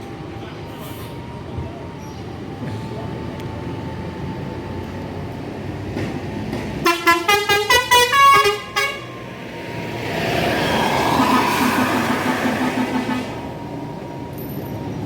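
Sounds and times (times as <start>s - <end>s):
bus engine idling: 0.0s - 15.0s
multi-tone bus horn tune: 6.8s - 9.6s, 10.6s - 14.6s.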